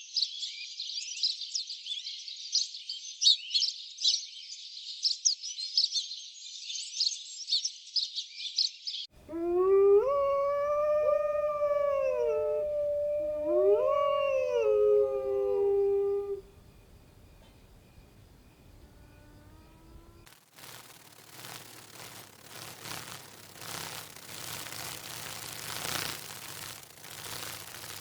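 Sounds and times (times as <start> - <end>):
dog howling: 9.2 - 16.6
high chirping and clicking: 9.3 - 28.0.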